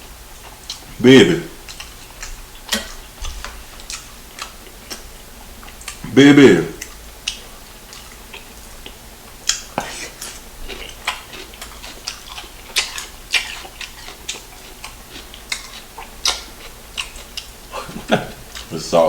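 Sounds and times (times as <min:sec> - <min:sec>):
wet chewing smacks: 0:00.3 - 0:18.8.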